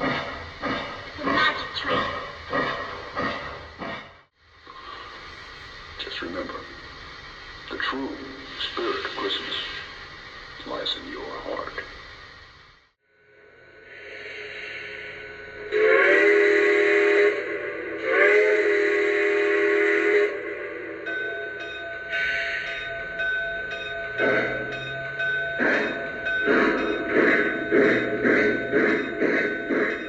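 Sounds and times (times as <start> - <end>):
steam exhaust chuffs: 0.0 - 12.9, 13.8 - 30.0
faint steam hiss: 4.4 - 12.9
chime steam whistle blasts: 13.2 - 30.0
locomotive bell ringing: 14.8 - 30.0.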